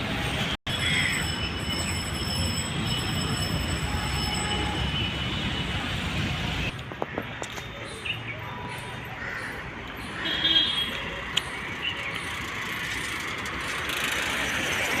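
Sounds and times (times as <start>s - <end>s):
road traffic hiss: 8.7s - 15.0s.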